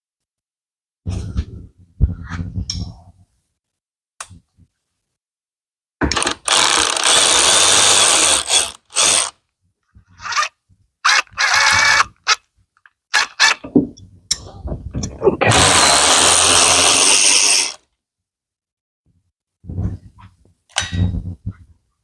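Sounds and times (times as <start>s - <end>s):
power drill running in bursts: 6.2s - 9.3s, 15.5s - 17.8s.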